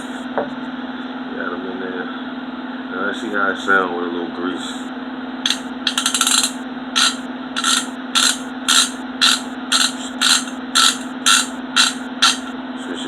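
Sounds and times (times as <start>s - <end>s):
hand ratchet clicking: 5.5s - 12.5s.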